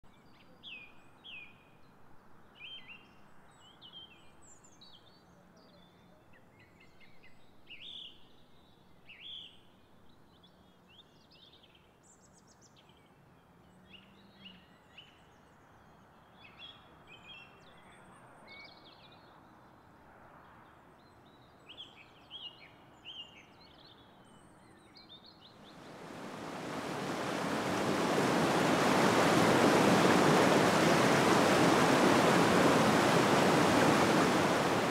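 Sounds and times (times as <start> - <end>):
songbirds chirping: 24.6 - 34.9
faint steady hiss: 25.6 - 34.9
water flowing: 25.7 - 34.9.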